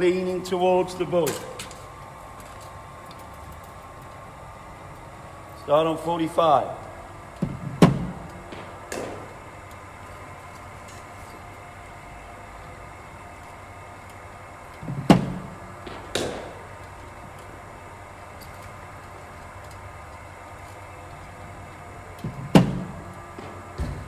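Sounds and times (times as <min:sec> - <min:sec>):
bowling machine hum: 0:00.0 - 0:24.0
bat striking cricket ball: 0:07.8 - 0:09.3, 0:15.1 - 0:16.6.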